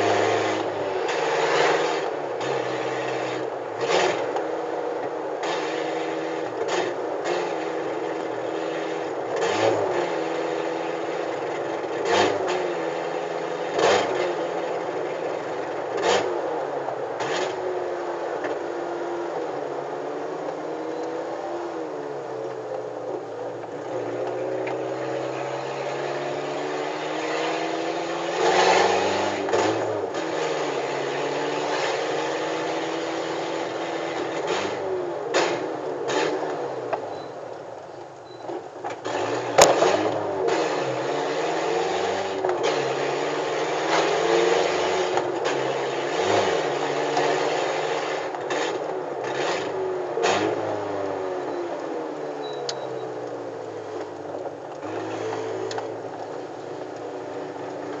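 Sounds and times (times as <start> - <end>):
car engine and exhaust running: 0.0 - 58.0
road noise: 0.0 - 58.0.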